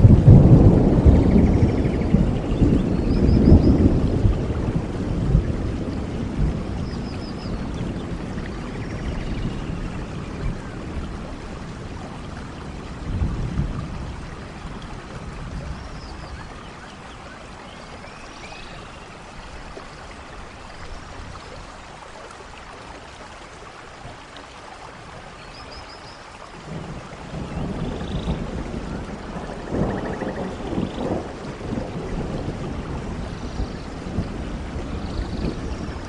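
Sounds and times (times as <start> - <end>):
thunder rumbling: 0.0 - 16.6, 26.6 - 36.0
steady rain falling: 0.0 - 36.0.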